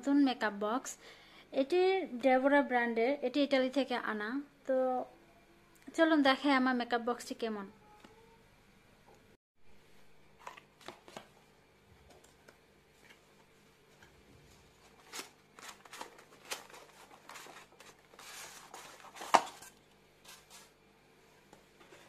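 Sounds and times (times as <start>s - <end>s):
packaging rustling: 14.0s - 20.8s.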